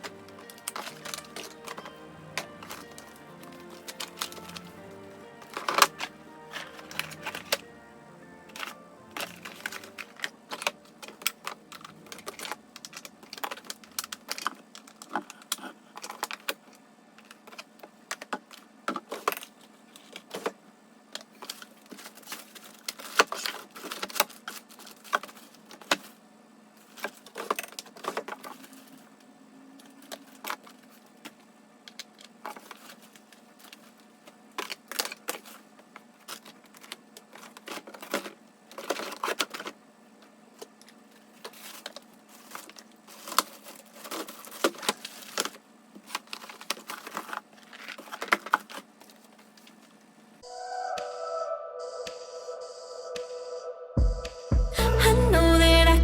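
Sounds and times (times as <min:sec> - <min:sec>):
small hard objects clattering: 0:00.0 - 0:07.7.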